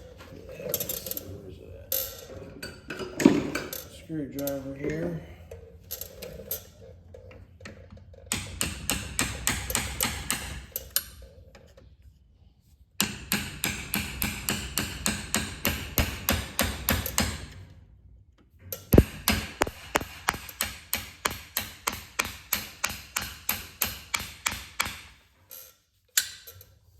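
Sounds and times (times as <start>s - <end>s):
hammer striking screwdriver: 19.0s - 25.0s.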